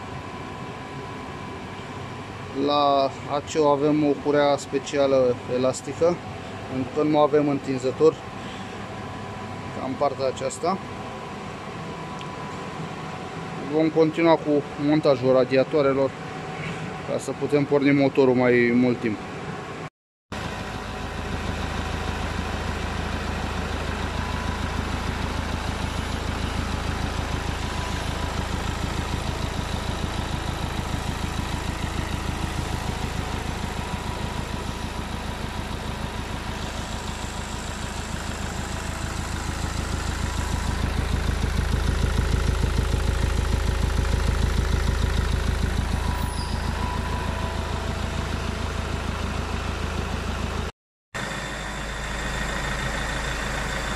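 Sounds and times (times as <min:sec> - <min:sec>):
diesel engine idling: 0:20.4 - 0:53.9.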